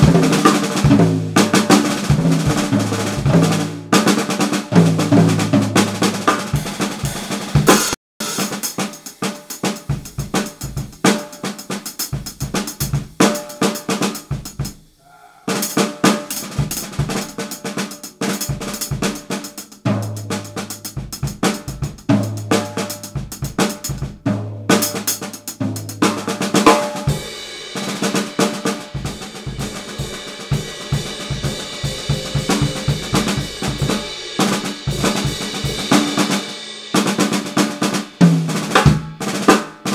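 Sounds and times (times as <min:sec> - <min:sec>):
drum kit playing: 0:00.0 - 0:39.9
cymbals washing: 0:06.2 - 0:19.7, 0:26.1 - 0:38.8
deep ringing low drum hits: 0:30.6 - 0:36.0.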